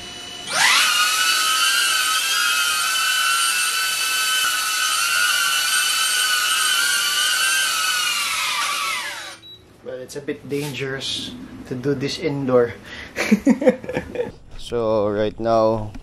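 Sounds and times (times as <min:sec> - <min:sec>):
drone propellers whining: 0:00.0 - 0:09.4.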